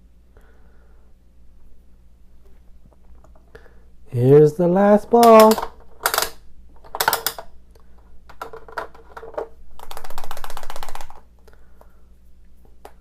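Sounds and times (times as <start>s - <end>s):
plastic capsule clicks: 5.2s - 7.5s
fast plastic ticking: 9.8s - 11.2s.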